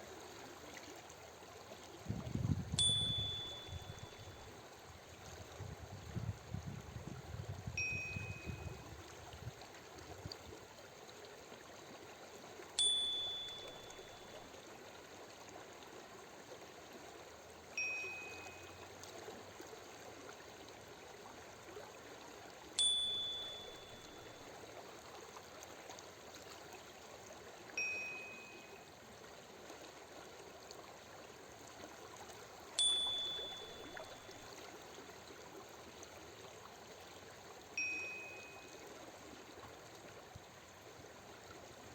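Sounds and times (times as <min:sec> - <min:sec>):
running water stream: 0:00.0 - 0:41.9
soft two-note chime: 0:02.7 - 0:04.6, 0:07.8 - 0:08.9, 0:12.8 - 0:14.6, 0:17.8 - 0:19.0, 0:22.8 - 0:24.5, 0:27.8 - 0:28.9, 0:32.8 - 0:34.5, 0:37.8 - 0:38.8.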